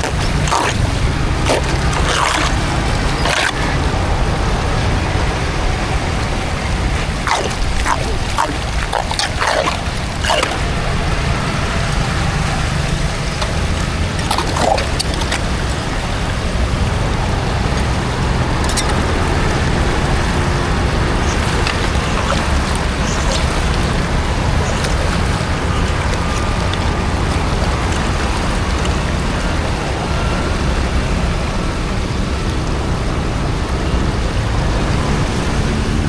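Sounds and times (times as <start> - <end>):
water draining through drain: 0.0 - 29.9.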